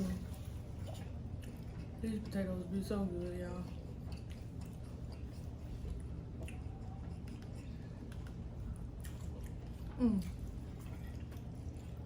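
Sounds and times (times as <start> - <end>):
chewing: 0.0 - 12.0
steady low hum: 0.0 - 12.0
food handling clicks and squishes: 3.6 - 12.0.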